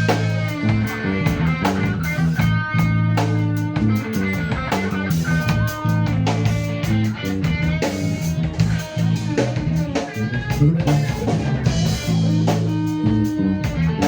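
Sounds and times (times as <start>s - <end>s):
blues-rock band playing: 0.0s - 14.0s
drum kit beat: 0.0s - 14.0s
electric guitar: 0.0s - 14.0s.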